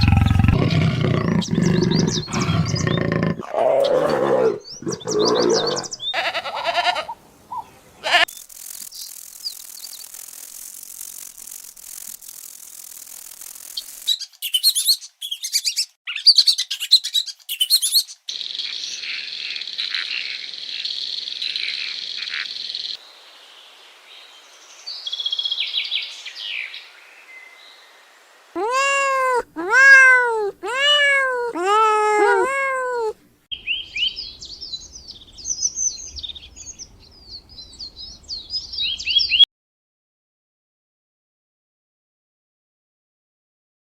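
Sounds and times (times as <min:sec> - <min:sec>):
birds chirping: 0:00.0 - 0:06.2, 0:28.6 - 0:39.4
rising and falling animal calls: 0:00.0 - 0:08.2, 0:28.6 - 0:33.2.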